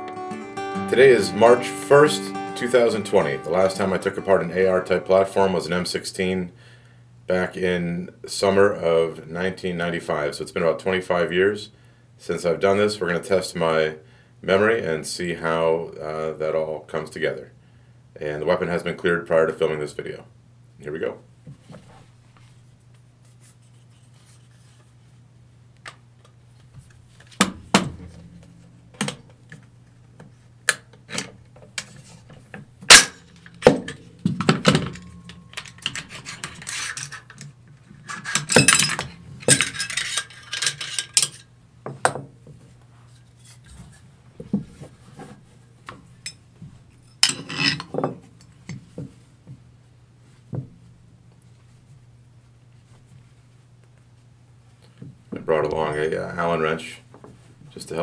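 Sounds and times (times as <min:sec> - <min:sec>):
rattling metal clatter: 0:32.9 - 0:37.4, 0:38.0 - 0:41.4
metal clicks and clacks: 0:32.9 - 0:37.5.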